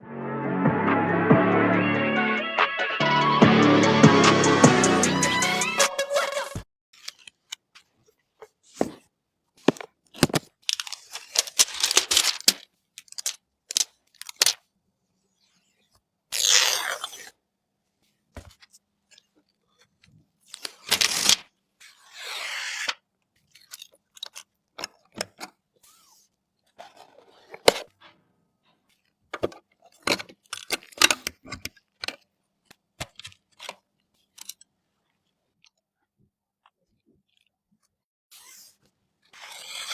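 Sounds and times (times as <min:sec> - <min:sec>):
packaging rustling or tearing: 0:09.6 - 0:14.6, 0:20.6 - 0:21.4.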